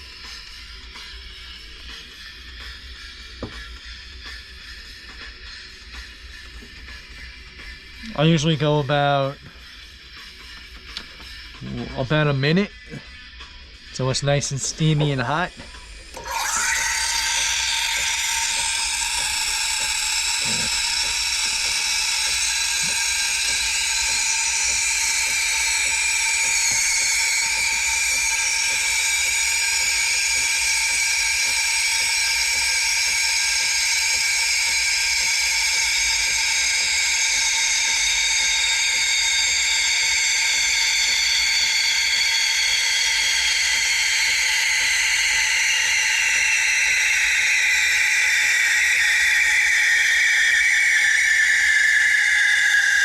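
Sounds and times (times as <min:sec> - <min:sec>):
high whistling screech: 0:14.0 - 0:53.0
steam wand hissing: 0:14.2 - 0:53.0.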